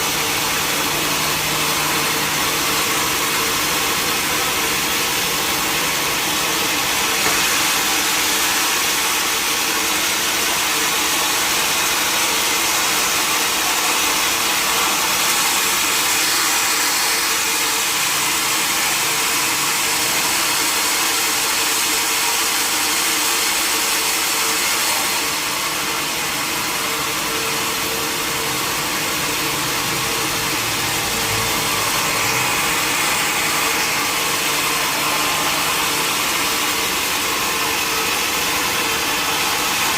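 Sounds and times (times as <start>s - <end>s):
sawmill machinery whine: 0.0s - 39.9s
machinery hum: 25.2s - 39.9s.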